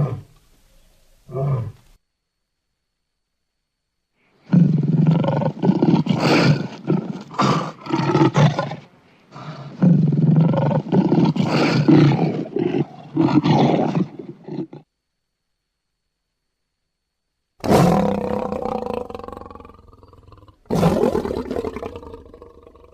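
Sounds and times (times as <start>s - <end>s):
lion roaring: 0.0s - 0.3s, 4.5s - 14.8s, 17.6s - 22.9s.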